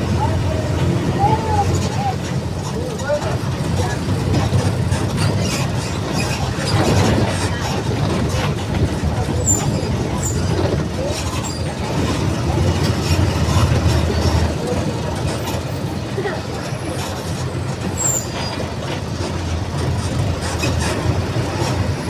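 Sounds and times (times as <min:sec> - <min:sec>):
bus diesel engine drone: 0:00.0 - 0:22.0.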